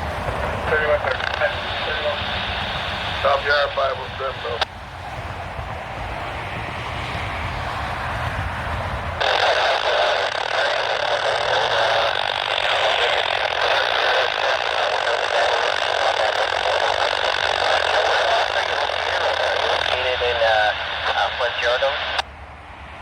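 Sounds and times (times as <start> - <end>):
radio static hiss: 0.0 - 4.7, 9.2 - 22.2.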